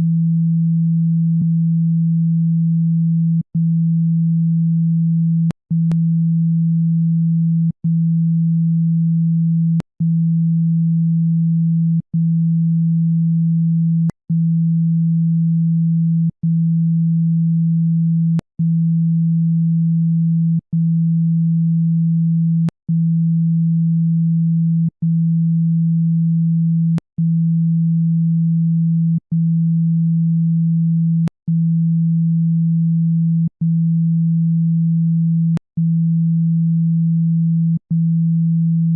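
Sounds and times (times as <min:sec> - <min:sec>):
low electronic sine tone: 0:00.0 - 0:38.9.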